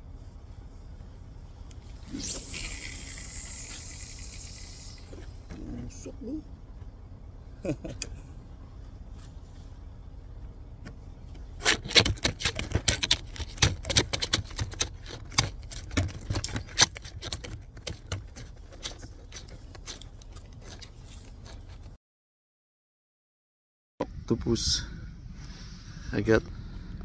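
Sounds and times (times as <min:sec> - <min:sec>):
low hum: 0:00.0 - 0:11.7, 0:24.0 - 0:27.0
sharp clicking and scraping: 0:10.8 - 0:22.0.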